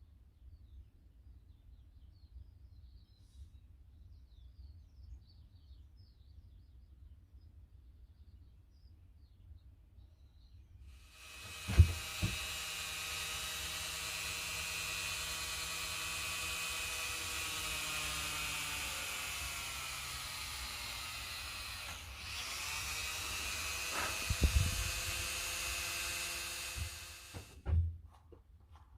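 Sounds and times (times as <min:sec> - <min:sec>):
electric sander whining: 0:11.0 - 0:27.6
knocks: 0:11.5 - 0:12.6, 0:26.6 - 0:28.1.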